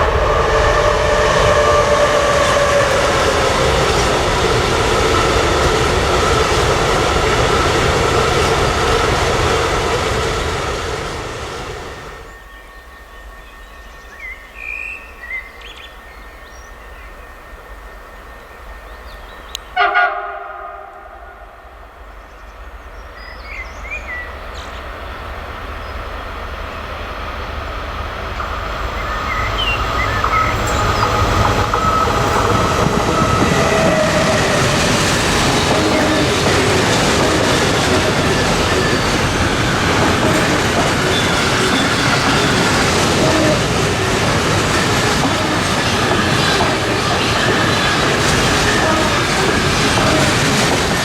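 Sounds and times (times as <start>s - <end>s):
train horn blast: 0.0s - 4.6s, 19.7s - 22.0s, 29.0s - 50.7s
train wheels on rails: 0.0s - 51.0s.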